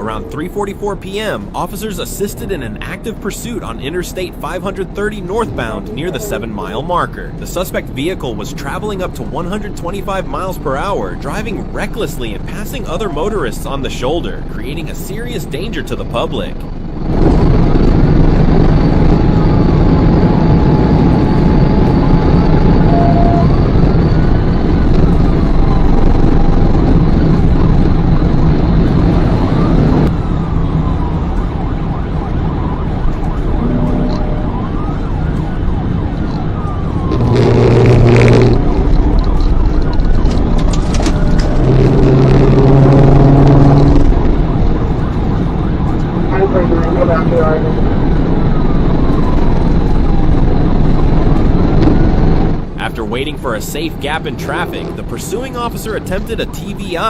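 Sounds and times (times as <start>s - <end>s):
car road and engine noise: 0.0s - 57.0s
police siren wailing: 0.0s - 57.0s
low steady tone: 17.9s - 26.8s, 32.6s - 36.4s.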